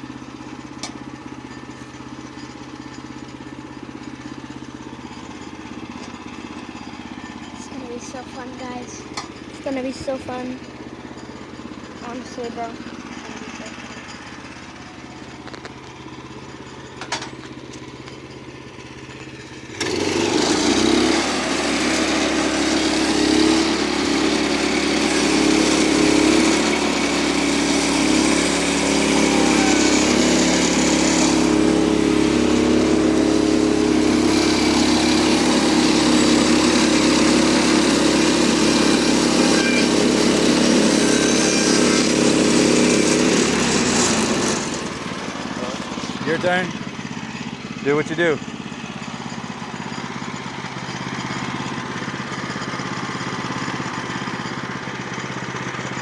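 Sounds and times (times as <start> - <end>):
sawmill gas engine running: 0.0 - 56.0
band blade cutting log: 19.8 - 46.6.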